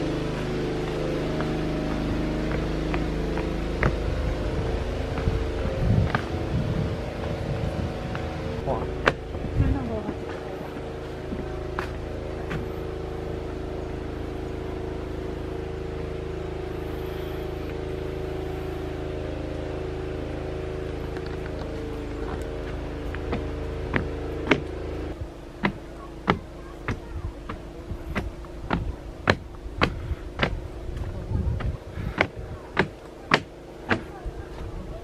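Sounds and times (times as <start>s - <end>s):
engine-like hum: 0.0s - 35.0s
sharp knocks: 31.6s - 34.1s.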